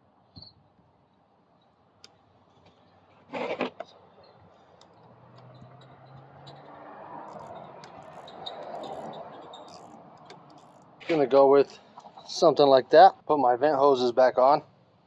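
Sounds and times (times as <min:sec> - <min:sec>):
loud scrape: 0:03.3 - 0:03.8.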